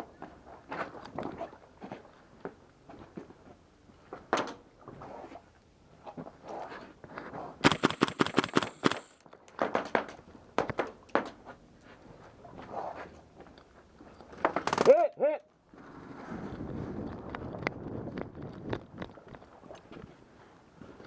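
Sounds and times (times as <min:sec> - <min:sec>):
airsoft rifle bursts: 0:07.6 - 0:09.2, 0:14.6 - 0:15.4.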